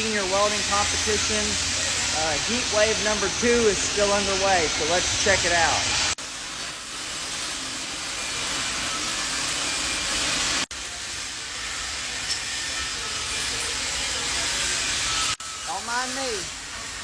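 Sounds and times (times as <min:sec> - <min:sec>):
welding arcs hissing: 0:00.0 - 0:17.0.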